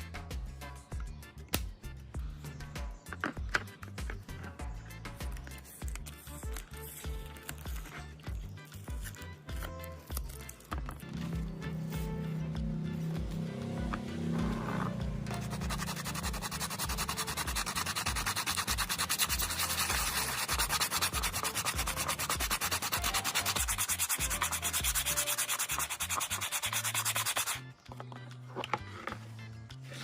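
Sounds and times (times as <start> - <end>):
sandpaper scraping plastic: 14.6 - 27.6.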